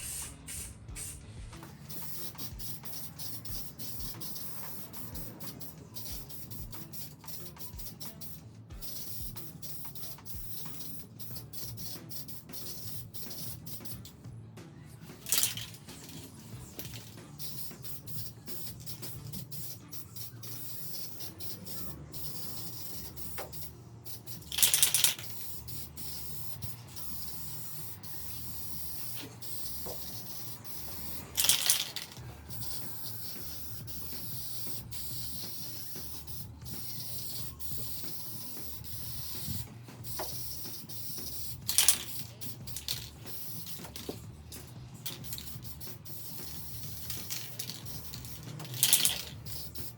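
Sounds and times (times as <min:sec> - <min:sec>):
spray paint can hissing: 0:00.0 - 0:14.2, 0:14.8 - 0:49.9.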